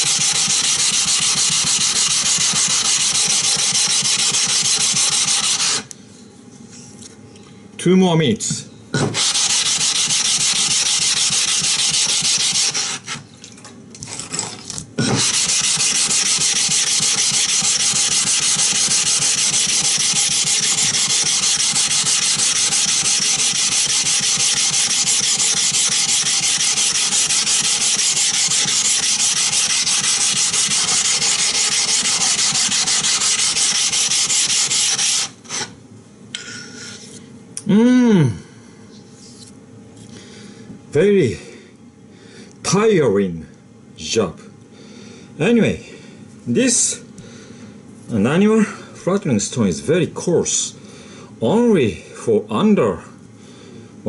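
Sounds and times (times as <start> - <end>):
stone rubbing on stone: 15.0 - 35.4.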